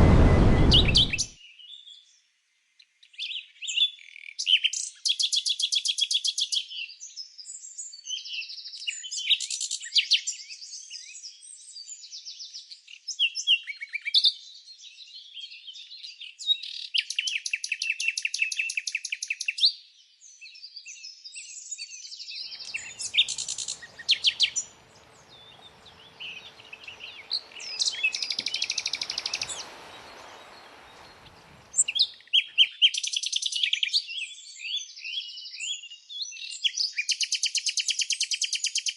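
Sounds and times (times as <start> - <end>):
songbirds chirping and singing: 21.8 - 37.0
faint background hiss: 22.5 - 32.2
bird trills: 22.6 - 32.5.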